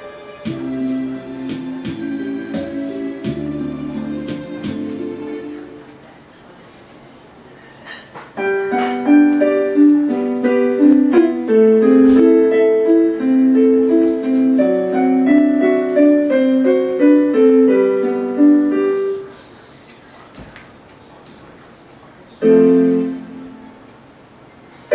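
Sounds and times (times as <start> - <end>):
electronic keyboard piano melody: 0.0 - 5.9, 8.4 - 19.3, 22.4 - 23.9.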